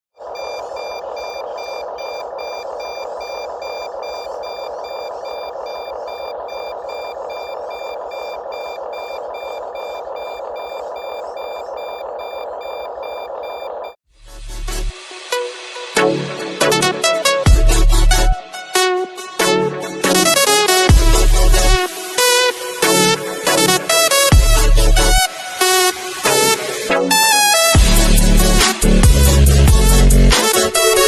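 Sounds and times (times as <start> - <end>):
rapid electronic beeping: 0.2 - 14.0
music: 14.2 - 31.0.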